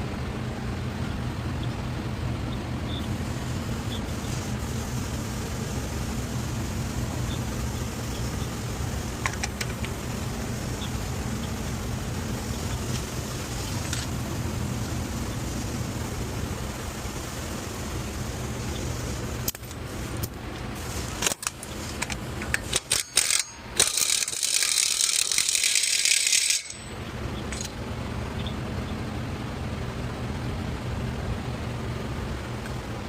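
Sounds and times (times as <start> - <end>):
steady low hum: 0.0 - 33.0
loud hiss: 3.0 - 26.3
metal hand tools clinking: 21.2 - 27.7.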